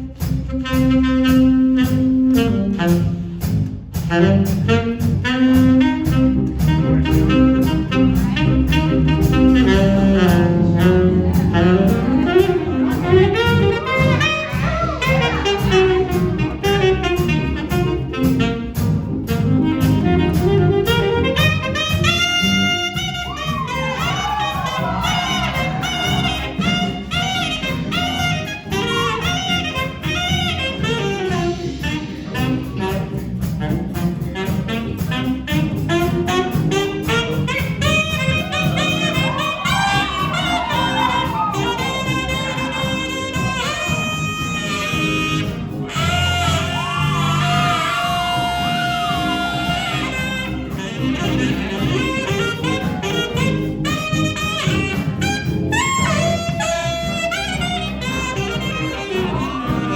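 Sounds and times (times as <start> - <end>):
big band jazz: 0.0 - 59.9
saxophone playing: 0.0 - 59.9.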